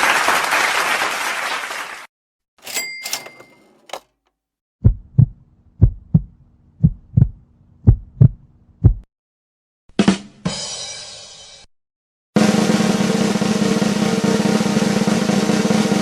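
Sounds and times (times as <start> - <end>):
heartbeat thumps: 4.8 - 9.1.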